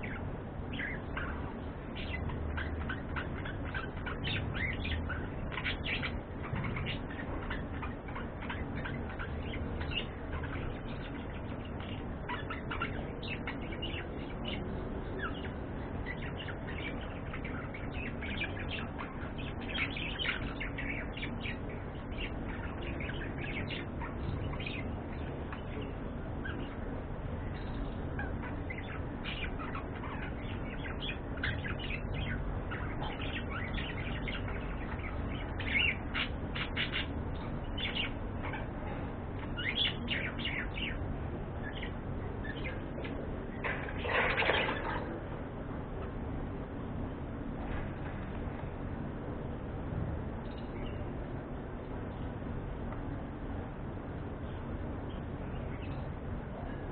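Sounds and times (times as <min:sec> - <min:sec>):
budgerigars chirping: 0:00.0 - 0:14.6, 0:15.2 - 0:26.8, 0:27.4 - 0:41.0
steady low hum: 0:00.0 - 0:56.9.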